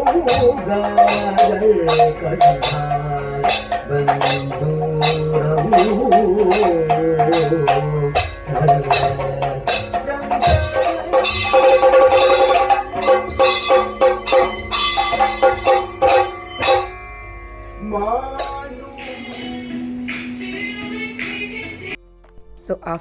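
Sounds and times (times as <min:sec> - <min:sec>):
person singing with wavering pitch: 0:00.0 - 0:16.9
sharp percussion strikes: 0:00.0 - 0:17.6, 0:18.2 - 0:20.4.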